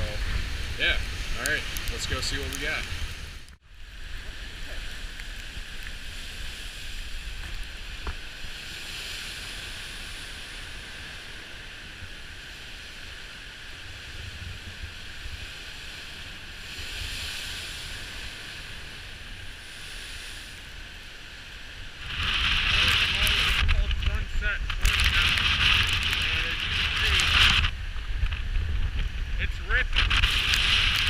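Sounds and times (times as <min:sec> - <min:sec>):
surf washing onto shore: 0:00.0 - 0:31.0
wind rumble on microphone: 0:00.0 - 0:31.0.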